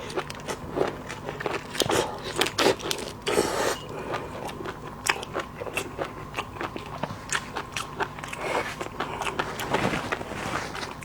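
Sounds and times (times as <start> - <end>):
crunchy chewing of food: 0.0 - 11.0.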